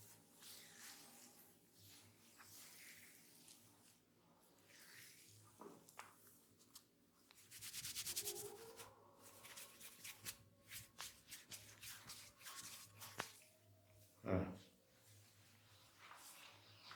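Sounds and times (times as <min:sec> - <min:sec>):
hands rubbing hair: 0:06.6 - 0:13.5, 0:15.3 - 0:16.9.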